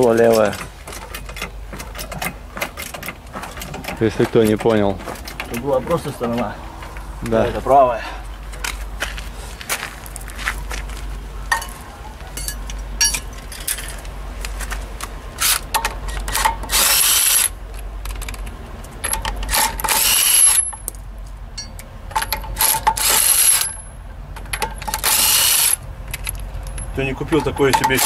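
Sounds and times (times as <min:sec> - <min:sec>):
impact wrench bursts: 0:15.4 - 0:17.6, 0:19.4 - 0:20.8, 0:21.6 - 0:23.8, 0:24.8 - 0:25.8
metallic clinks of tools: 0:21.6 - 0:23.9.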